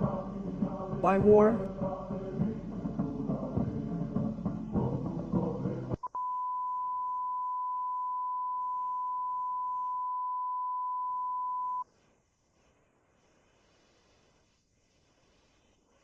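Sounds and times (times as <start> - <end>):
music with drums: 0.0 - 6.0.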